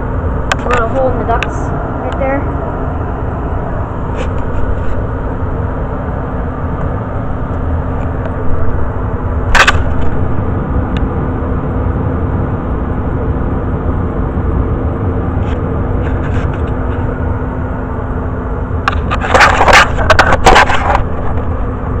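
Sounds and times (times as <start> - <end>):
furnace blower fan humming: 0.0 - 22.0
sharp click: 9.5 - 10.2.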